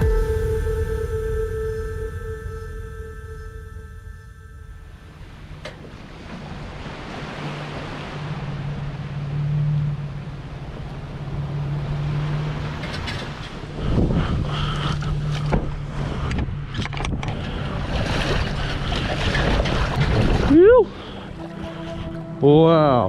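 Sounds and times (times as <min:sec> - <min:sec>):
boat engine humming: 0:00.0 - 0:23.0
water rushing and splashing: 0:04.8 - 0:23.0.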